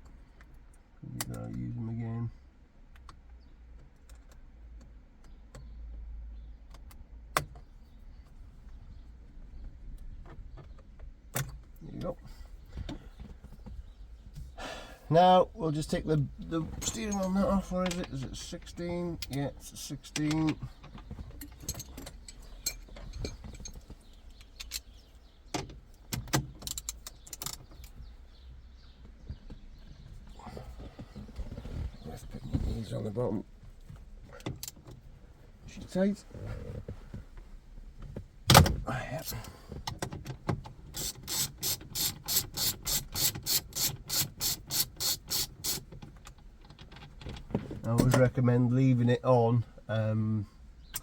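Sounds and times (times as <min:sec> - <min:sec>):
metal tools clinking: 0:16.7 - 0:19.4, 0:21.4 - 0:23.9
ratchet clicks: 0:41.0 - 0:45.9.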